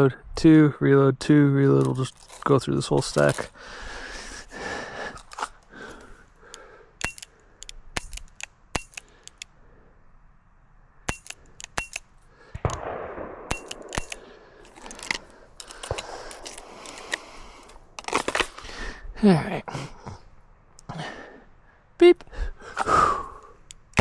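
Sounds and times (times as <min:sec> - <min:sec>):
sharp cracks and clicks: 0:04.3 - 0:09.5, 0:11.1 - 0:18.6, 0:23.6 - 0:24.0.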